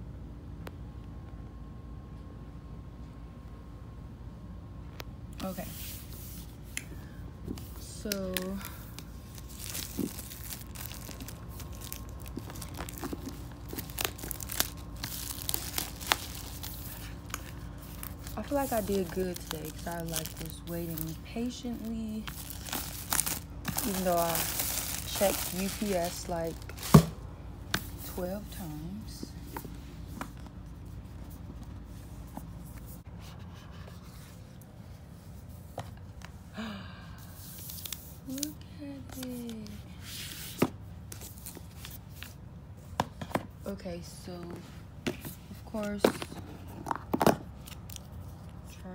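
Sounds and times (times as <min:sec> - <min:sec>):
steady low hum: 0:00.0 - 0:48.9
wrapping crinkling and tearing: 0:07.8 - 0:27.0, 0:47.5 - 0:48.8
sharp packaging crackles and snaps: 0:07.9 - 0:21.3, 0:22.2 - 0:27.1.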